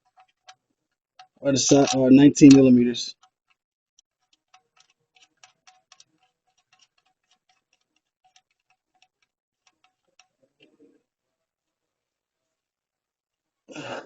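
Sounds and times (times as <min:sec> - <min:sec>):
faint metallic clicking: 0:00.0 - 0:11.0.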